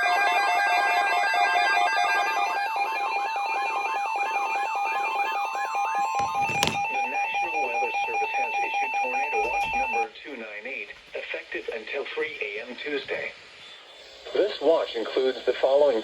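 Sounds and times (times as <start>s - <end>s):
steady alarm tones: 0.2s - 10.0s.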